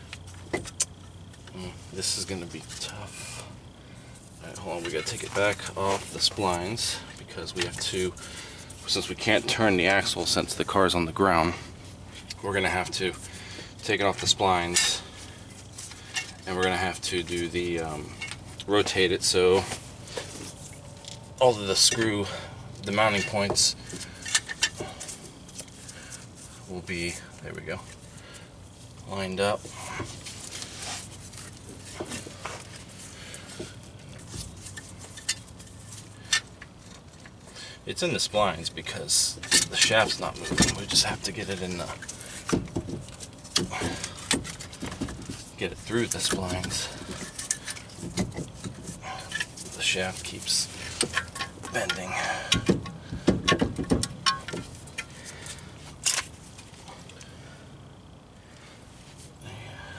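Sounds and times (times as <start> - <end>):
metal clinks and knocks: 11.5 - 26.7, 29.4 - 37.5, 39.1 - 57.1
metallic clicks and scrapes: 29.8 - 37.6, 39.4 - 57.1.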